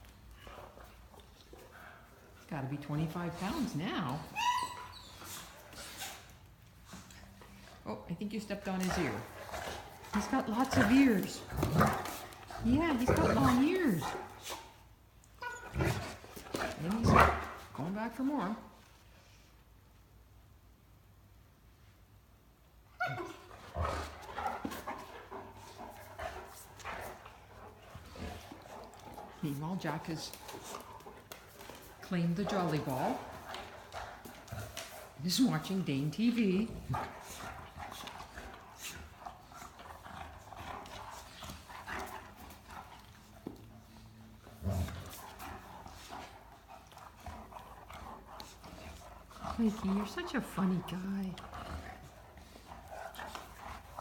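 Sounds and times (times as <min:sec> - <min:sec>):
dog whimpers: 0:03.6 - 0:06.2, 0:15.4 - 0:16.0, 0:23.0 - 0:23.5
dog crying: 0:04.1 - 0:05.4, 0:23.0 - 0:23.5
dogs scuffling: 0:08.3 - 0:14.8, 0:23.6 - 0:54.0
paws scuffling: 0:08.8 - 0:14.5, 0:23.8 - 0:35.8.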